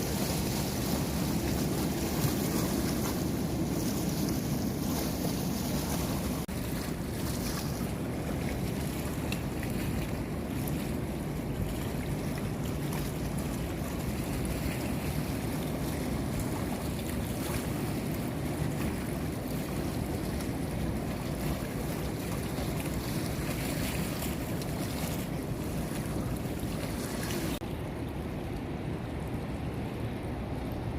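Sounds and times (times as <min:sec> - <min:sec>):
water rushing: 0:00.0 - 0:30.9.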